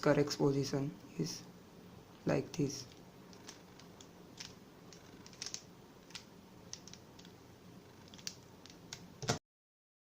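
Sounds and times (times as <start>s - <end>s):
puzzle cube clicking: 2.5s - 9.1s.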